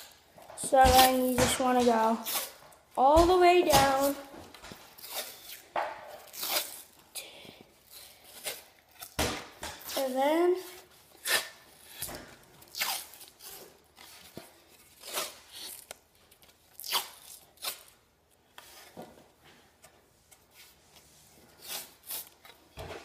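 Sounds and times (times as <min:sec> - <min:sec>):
tape rubbing: 0:02.2 - 0:02.7, 0:03.9 - 0:07.2, 0:09.8 - 0:19.0, 0:19.8 - 0:22.7
tape ripping off roll: 0:03.9 - 0:07.0, 0:10.6 - 0:18.1.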